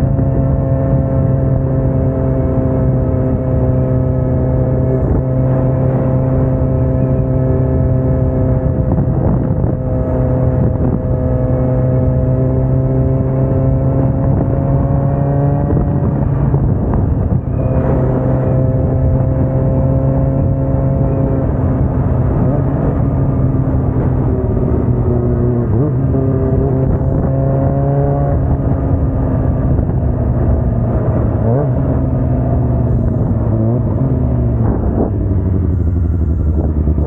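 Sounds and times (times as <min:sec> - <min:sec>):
motorcycle engine running: 0:00.0 - 0:37.0
wind noise on microphone: 0:00.0 - 0:37.0.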